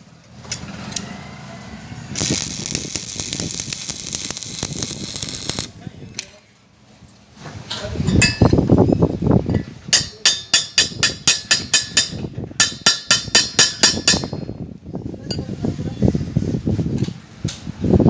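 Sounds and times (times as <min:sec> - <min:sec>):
chipping hammer striking metal: 0:10.0 - 0:14.4.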